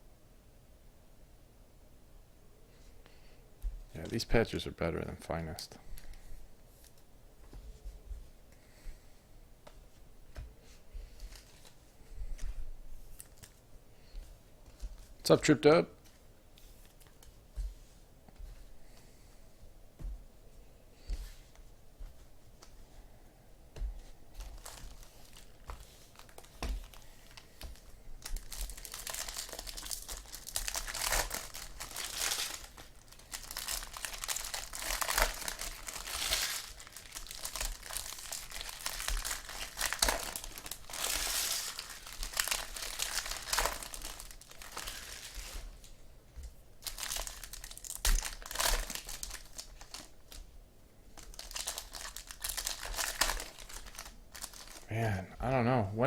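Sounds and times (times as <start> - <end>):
card pack wrappers crinkling and tearing: 4.0 - 4.4, 13.2 - 13.6, 24.3 - 45.9, 46.8 - 50.5, 51.2 - 54.9.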